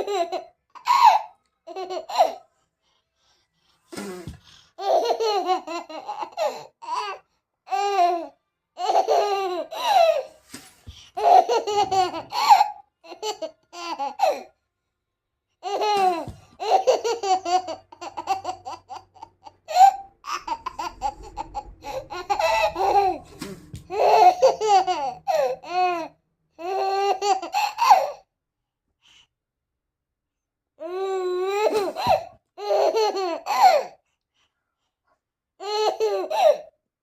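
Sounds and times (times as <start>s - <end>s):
baby laughing: 0.0s - 2.5s, 4.0s - 10.3s, 11.2s - 14.5s, 15.6s - 28.2s, 30.9s - 33.9s.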